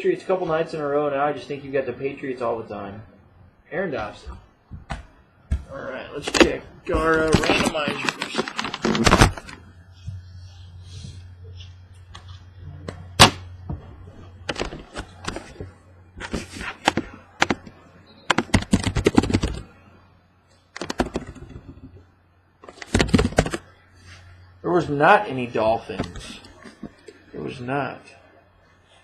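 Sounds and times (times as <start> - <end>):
keyboard typing: 18.3 - 19.7, 20.7 - 21.8.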